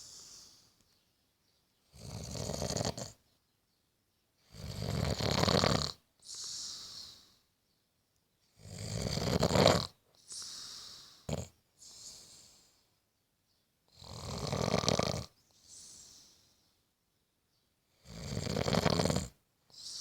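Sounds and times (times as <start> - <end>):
soft hissing breath: 0.0 - 1.0, 6.2 - 7.6, 10.2 - 13.0, 15.5 - 16.8, 19.7 - 20.0
person snoring heavily: 2.0 - 3.2, 4.5 - 7.2, 8.6 - 11.5, 14.0 - 15.3, 18.0 - 20.0.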